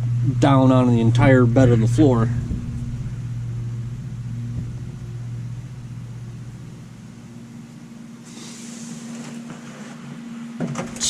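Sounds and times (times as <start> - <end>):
machine humming: 0.0 - 11.0
brief rustle or scrape: 8.3 - 10.1.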